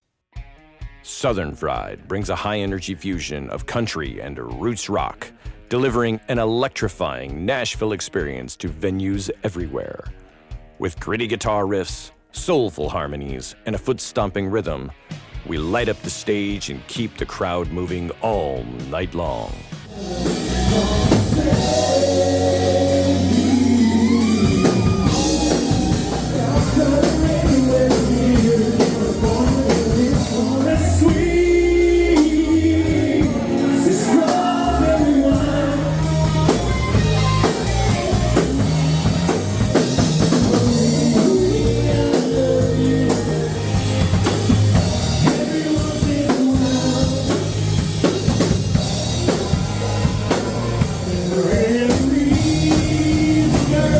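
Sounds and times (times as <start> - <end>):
bass line: 1.0 - 10.2, 10.8 - 53.9
drum kit beat: 9.6 - 53.9
person singing: 17.5 - 47.6, 49.2 - 53.9.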